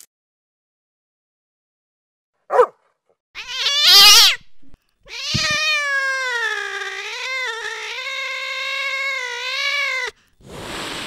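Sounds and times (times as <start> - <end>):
animal yelping and wailing: 3.4 - 4.4, 5.1 - 10.1.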